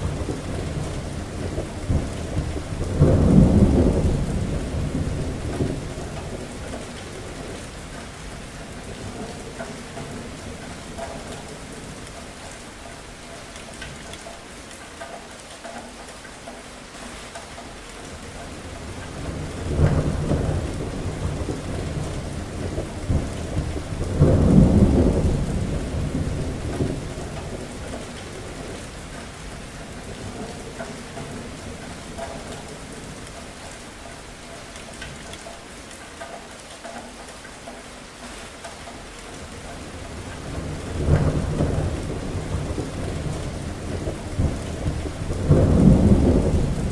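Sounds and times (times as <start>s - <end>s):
rolling thunder rumbles: 0.0s - 12.1s, 18.1s - 33.6s, 39.4s - 46.9s
steady rain falling: 0.0s - 46.9s.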